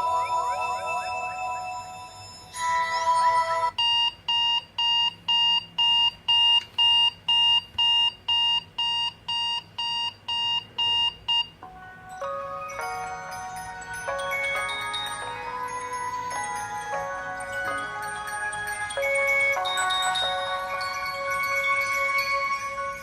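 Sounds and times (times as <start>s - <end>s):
repeating electronic beep: 0.0s - 3.4s
short melodic phone tone: 0.0s - 3.7s
chiming melody: 0.0s - 3.8s, 11.6s - 23.0s.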